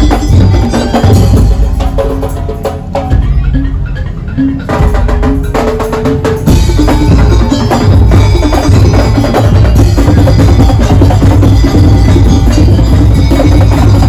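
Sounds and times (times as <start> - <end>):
bell-like tones: 0.0 - 14.0
heavy bass drums: 0.0 - 14.0
percussion ensemble playing: 0.0 - 14.0
wood-block beats: 0.0 - 14.0.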